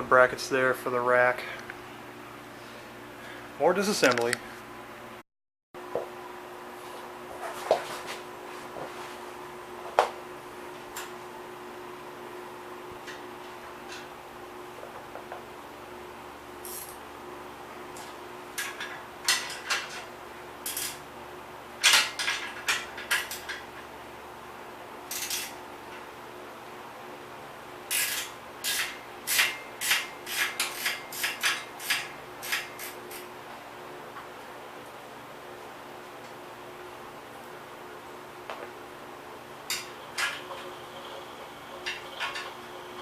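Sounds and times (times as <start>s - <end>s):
faint steady hum: 0.0s - 5.2s, 5.8s - 43.0s
tools scraping on metal: 25.1s - 25.6s, 27.9s - 33.3s.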